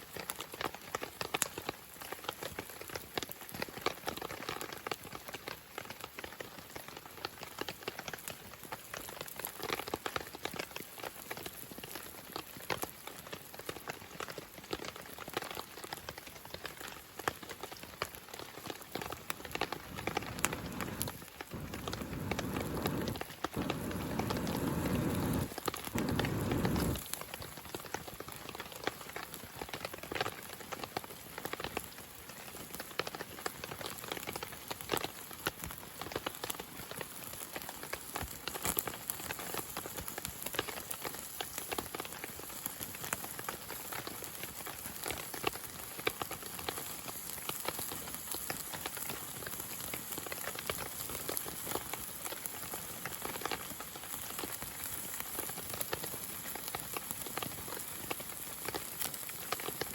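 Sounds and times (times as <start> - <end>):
rain pattering: 0.1 - 59.9
low rushing noise: 19.7 - 27.0.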